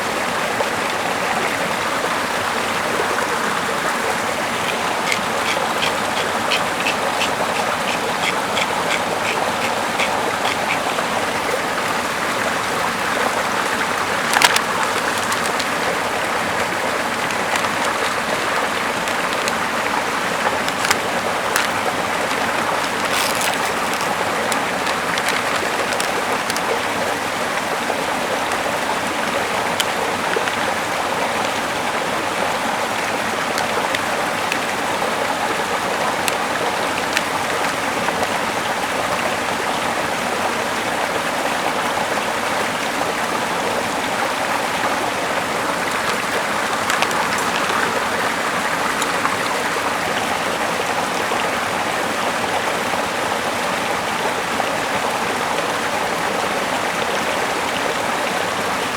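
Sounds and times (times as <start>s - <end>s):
running water rushing: 0.0s - 58.9s
faint clicks: 14.1s - 16.0s, 17.2s - 26.8s, 29.6s - 31.6s, 45.7s - 49.6s.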